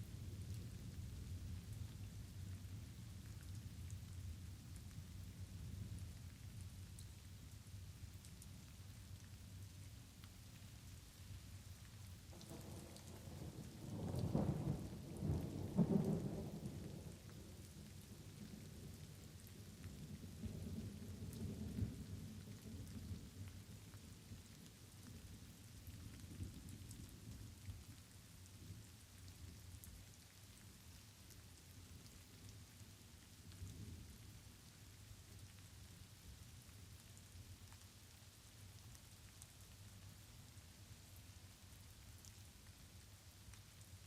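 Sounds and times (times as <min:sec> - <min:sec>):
light rain: 0:00.0 - 0:44.0
raindrop ticks: 0:01.6 - 0:07.2, 0:08.1 - 0:41.1, 0:41.8 - 0:44.0.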